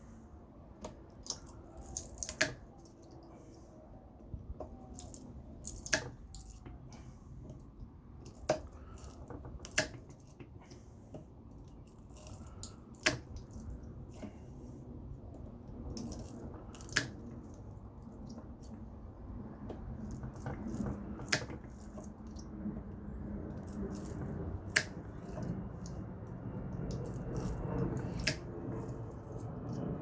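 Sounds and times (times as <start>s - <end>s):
wire cutters snapping copper: 0.8s - 3.2s, 4.8s - 7.1s, 8.2s - 10.4s, 15.9s - 17.6s, 26.9s - 29.8s.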